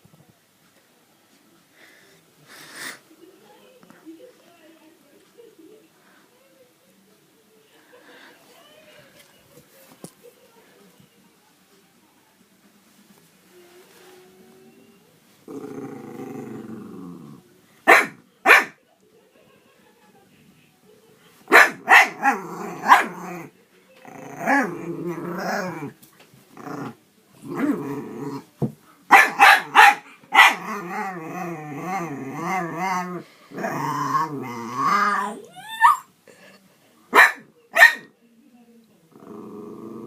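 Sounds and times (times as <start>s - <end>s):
dog growling: 15.4s - 17.4s, 21.8s - 28.5s, 29.6s - 36.5s, 39.1s - 40.0s
dog barking: 17.9s - 18.8s, 21.5s - 23.2s, 29.1s - 30.7s, 37.1s - 38.1s.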